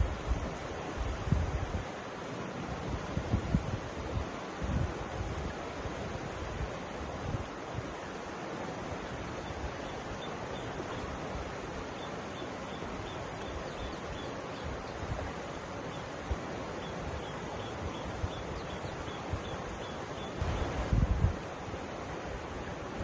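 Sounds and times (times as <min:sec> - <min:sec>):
wind bumps on microphone: 0:00.0 - 0:01.8, 0:02.8 - 0:07.4, 0:20.4 - 0:21.4
river water rushing: 0:00.0 - 0:23.0.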